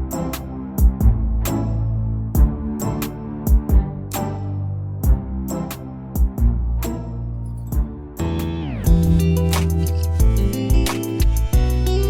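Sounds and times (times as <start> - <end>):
guitar music with beat and bass: 7.7 - 12.0.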